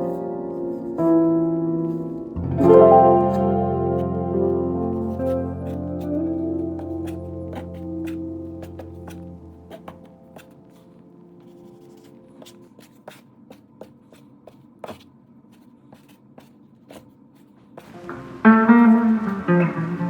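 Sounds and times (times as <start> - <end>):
plucked guitar music: 0.0 - 10.3, 18.0 - 20.0
ambient music: 0.0 - 11.7, 18.0 - 20.0.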